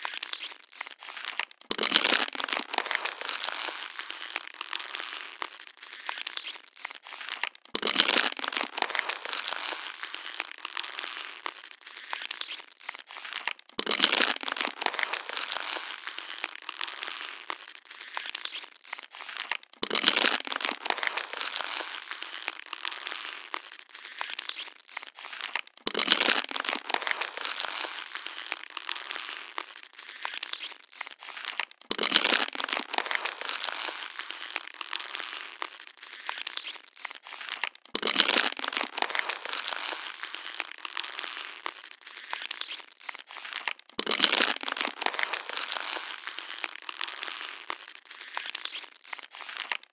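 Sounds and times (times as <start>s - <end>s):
plastic bottle crunching: 0.0s - 49.9s
plastic crackling: 0.0s - 49.9s.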